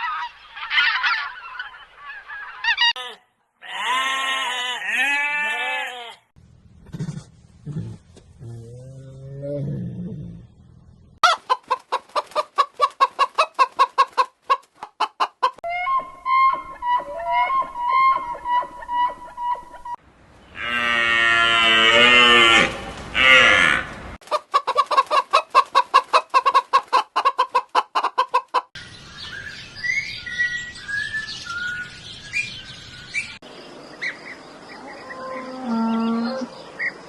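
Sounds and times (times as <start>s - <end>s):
chicken clucking: 11.2s - 16.0s, 24.2s - 28.7s
bird-like chirps: 28.8s - 37.0s.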